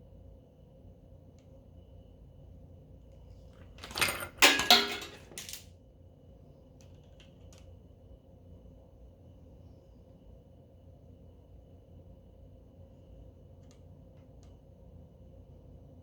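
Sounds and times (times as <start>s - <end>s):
small metal objects clattering: 3.8s - 5.6s.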